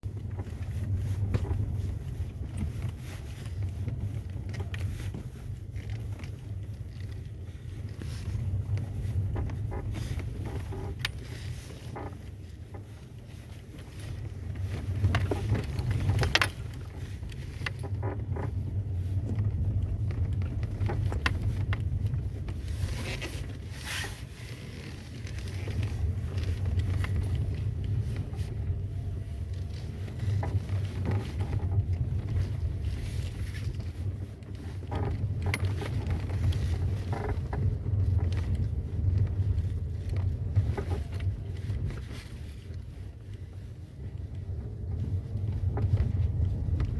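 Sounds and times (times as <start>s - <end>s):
car driving rumble: 0.0s - 46.9s
suspension squeaks and knocks: 7.8s - 42.5s.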